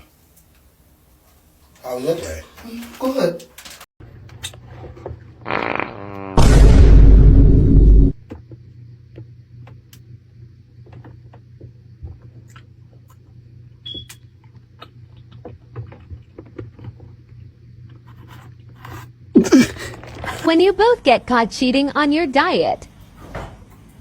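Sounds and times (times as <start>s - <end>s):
steady low hum: 6.4s - 8.2s.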